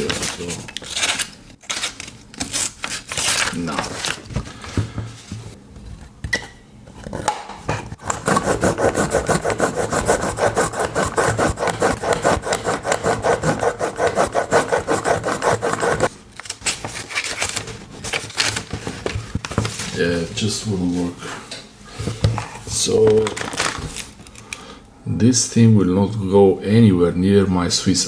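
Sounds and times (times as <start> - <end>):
knife rasping through sharpener: 8.1 - 16.1.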